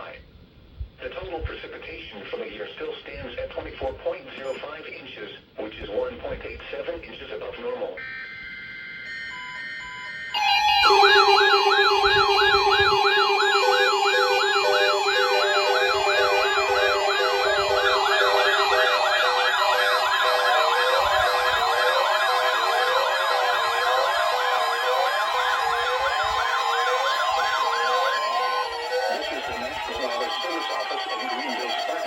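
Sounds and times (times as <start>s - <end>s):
steady alarm tone: 8.0s - 32.0s
warbling siren sweeps: 9.0s - 32.0s.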